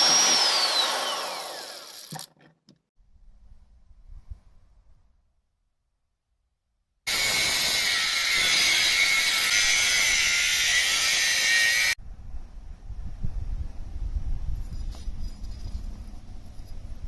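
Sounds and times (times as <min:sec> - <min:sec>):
power tool grinding steel: 0:00.0 - 0:02.3, 0:07.1 - 0:12.0.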